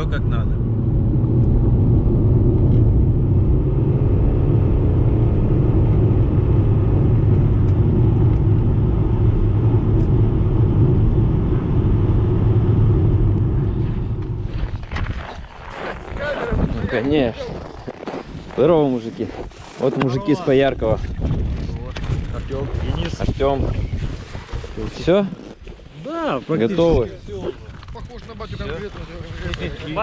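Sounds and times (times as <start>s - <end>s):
car engine and road noise: 0.0s - 17.3s.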